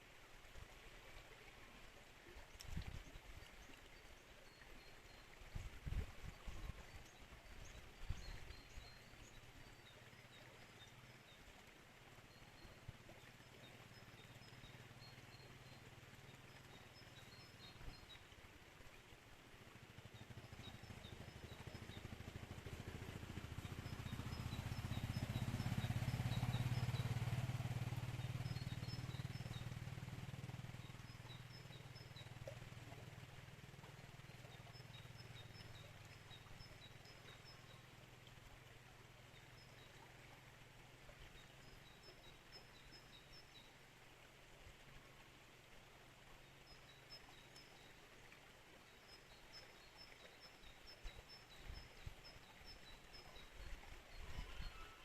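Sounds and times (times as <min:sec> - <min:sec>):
river water rushing: 0:09.0 - 0:51.4
vehicle engine hum: 0:19.6 - 0:43.2
bird chirping: 0:23.5 - 0:29.8.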